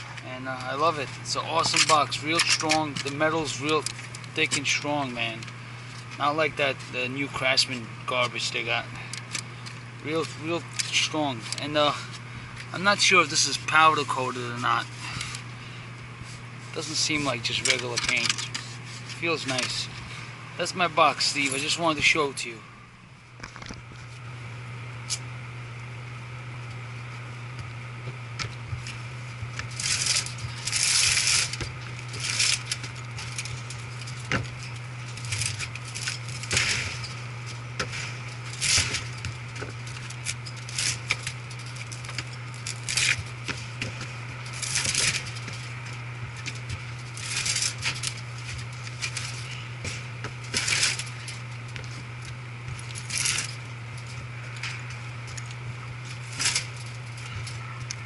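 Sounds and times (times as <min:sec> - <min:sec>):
low hum: 0:00.0 - 0:58.0
metal tools clinking: 0:44.4 - 0:51.9.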